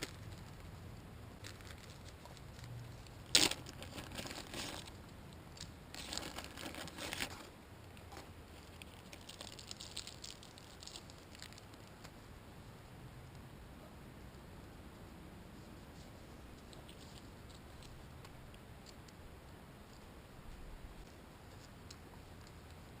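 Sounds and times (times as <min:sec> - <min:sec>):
packaging crinkling: 0:01.4 - 0:05.0, 0:05.6 - 0:07.5, 0:08.6 - 0:12.2.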